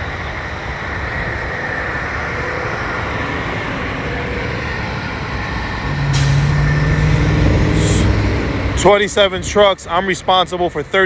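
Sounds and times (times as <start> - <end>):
diesel truck engines running: 0.0 - 11.0
short air hiss: 6.0 - 6.7.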